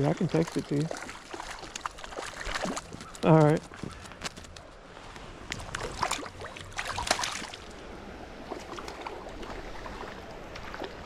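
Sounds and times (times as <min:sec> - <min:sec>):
splashes and clicks: 0:00.0 - 0:04.8, 0:05.4 - 0:07.8, 0:08.5 - 0:11.0
creek water running: 0:00.0 - 0:11.0.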